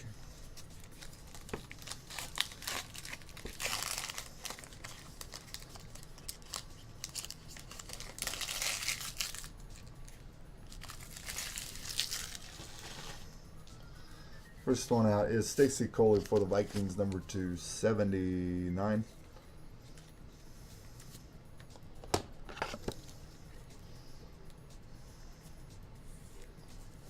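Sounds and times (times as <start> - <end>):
wrapper crinkling and tearing: 0.8 - 13.2.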